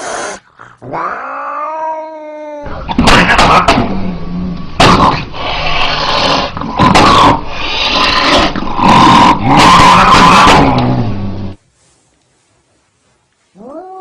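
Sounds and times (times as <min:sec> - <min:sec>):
cat growling and yowling: 0:00.0 - 0:03.9, 0:05.7 - 0:11.1, 0:13.6 - 0:14.0.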